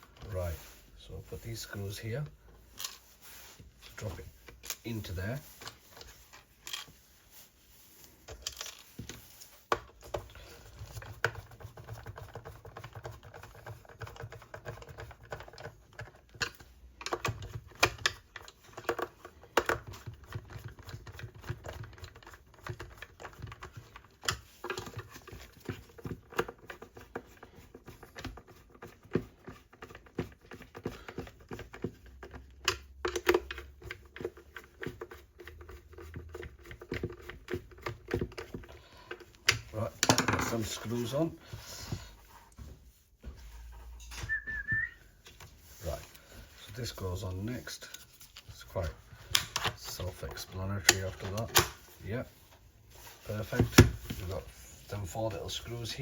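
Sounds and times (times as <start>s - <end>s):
plastic parts clicking and tapping: 8.3s - 40.8s.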